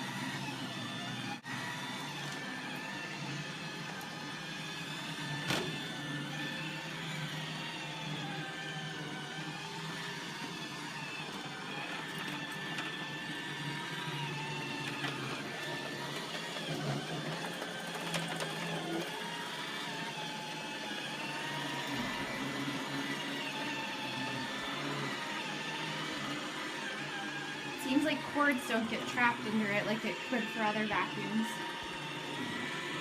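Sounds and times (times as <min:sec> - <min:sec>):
robot vacuum humming and whining: 0:00.0 - 0:33.0.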